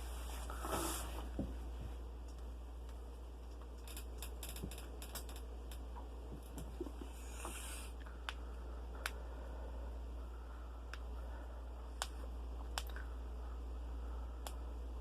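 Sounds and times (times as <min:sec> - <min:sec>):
knuckles cracking: 0:12.0 - 0:13.0.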